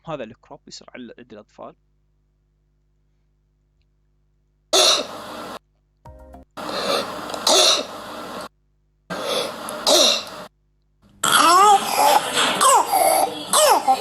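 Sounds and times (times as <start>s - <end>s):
child coughing harshly: 4.8s - 5.1s, 6.9s - 7.9s, 9.8s - 10.3s, 11.2s - 14.0s.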